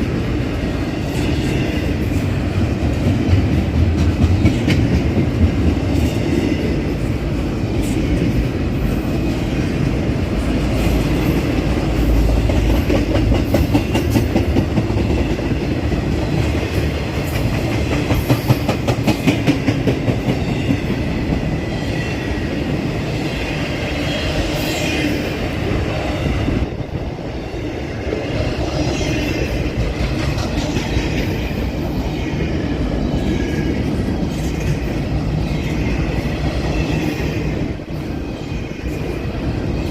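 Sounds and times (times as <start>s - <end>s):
train cars rumbling past: 0.0s - 39.9s.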